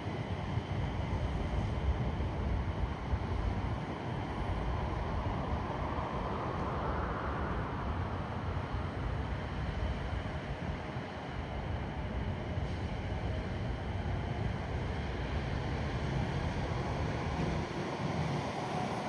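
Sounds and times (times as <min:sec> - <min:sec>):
train passing: 0:12.9 - 0:19.0.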